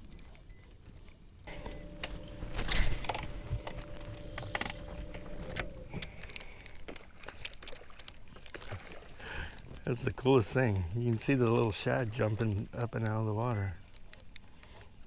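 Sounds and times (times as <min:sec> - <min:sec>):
fishing reel whirring and clicking: 0:02.0 - 0:07.0.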